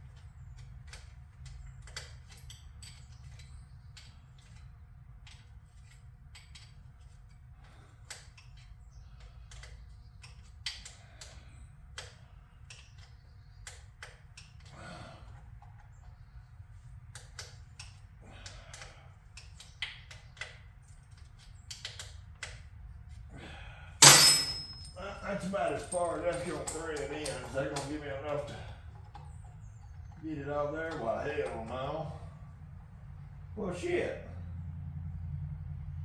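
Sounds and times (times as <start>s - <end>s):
low steady hum: 23.4s - 35.8s
metal parts and tools clicking: 24.0s - 28.0s.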